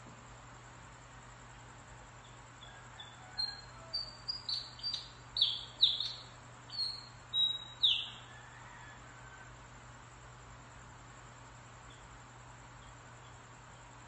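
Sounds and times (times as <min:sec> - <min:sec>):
bird singing: 0:01.6 - 0:08.9.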